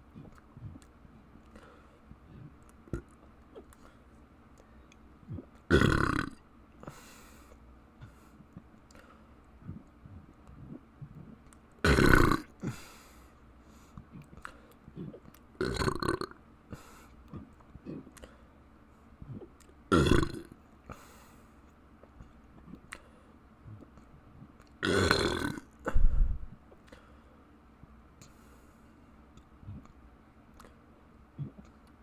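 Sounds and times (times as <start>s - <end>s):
faint mouth clicks: 0.0s - 5.7s, 7.5s - 11.8s, 14.0s - 15.5s, 17.2s - 18.4s, 19.2s - 19.8s, 21.6s - 23.1s, 23.7s - 24.8s, 29.3s - 30.8s, 31.4s - 32.0s
person burping: 5.3s - 6.4s, 11.8s - 12.5s, 15.0s - 16.4s, 19.3s - 20.5s, 24.8s - 26.2s.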